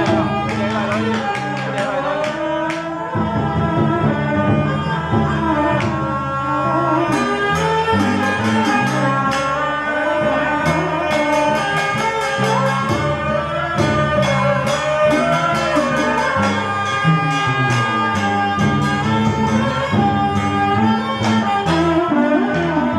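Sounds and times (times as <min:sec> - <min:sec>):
funeral music melody: 0:00.0 - 0:22.9
percussion strikes: 0:00.0 - 0:22.9.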